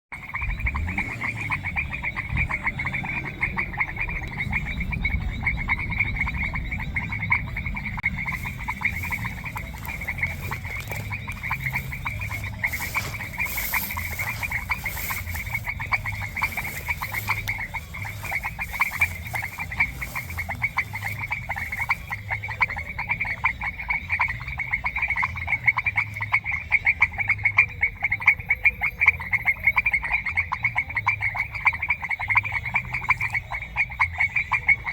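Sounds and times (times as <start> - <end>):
frogs calling in pulsing trill: 0.1 - 34.9
low rumble: 0.2 - 23.5.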